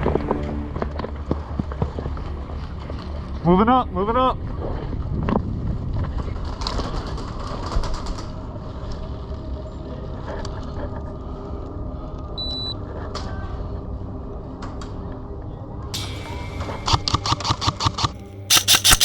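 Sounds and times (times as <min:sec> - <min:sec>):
wind rumble on camera: 0:01.3 - 0:15.9
sharp clicks: 0:16.9 - 0:19.0.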